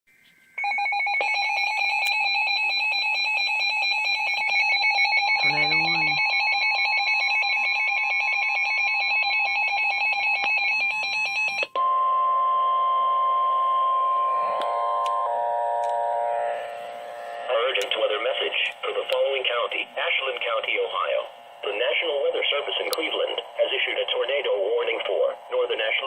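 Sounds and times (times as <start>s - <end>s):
pulsing high alarm tones: 0.6s - 11.6s, 12.4s - 26.0s
steady warning tone: 2.9s - 6.5s, 13.4s - 26.0s.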